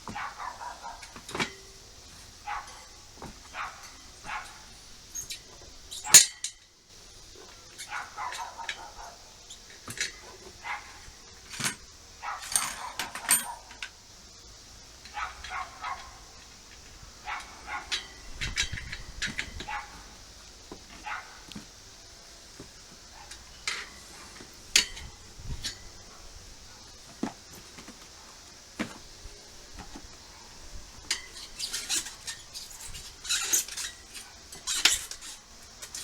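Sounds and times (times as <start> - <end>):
dog barking and yelping: 0.1 - 1.2, 2.4 - 2.9, 3.5 - 4.6, 7.8 - 9.3, 10.6 - 11.0, 12.2 - 13.8, 15.1 - 16.2, 17.2 - 18.0, 19.7 - 20.0, 21.0 - 21.4.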